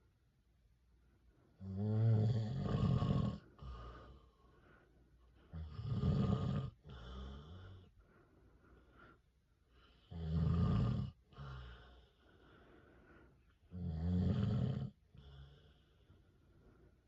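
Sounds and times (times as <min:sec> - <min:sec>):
quiet breath: 0:00.0 - 0:01.8, 0:02.4 - 0:13.8, 0:14.4 - 0:17.0
man snoring: 0:01.6 - 0:04.2, 0:05.5 - 0:07.9, 0:09.9 - 0:12.1, 0:13.7 - 0:15.9.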